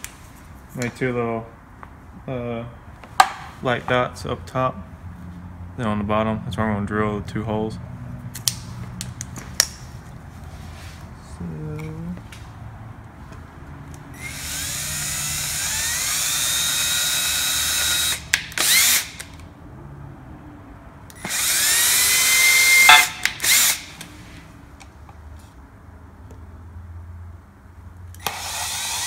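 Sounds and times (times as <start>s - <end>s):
power drill boring into plastic: 14.2s - 19.3s, 21.2s - 23.9s, 28.2s - 29.0s.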